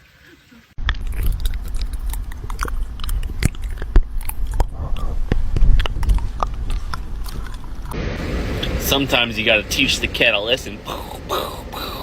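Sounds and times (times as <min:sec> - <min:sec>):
cat crunching and chewing: 0:00.8 - 0:08.0.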